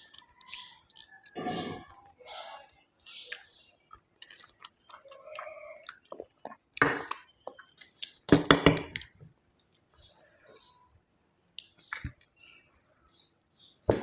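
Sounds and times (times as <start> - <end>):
wet chewing and mouth clicks: 0.0 - 2.2, 3.1 - 9.9.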